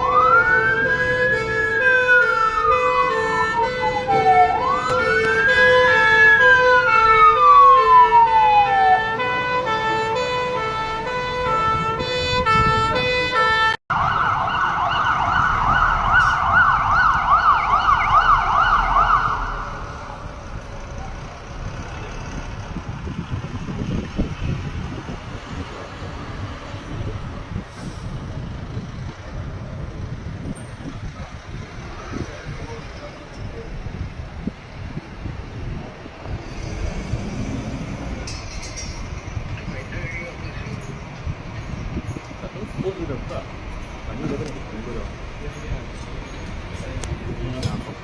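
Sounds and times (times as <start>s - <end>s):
pulsing siren tones: 0.0s - 20.2s
wailing siren: 0.0s - 20.3s
road traffic: 0.0s - 48.0s
fast yelping siren: 13.9s - 19.7s.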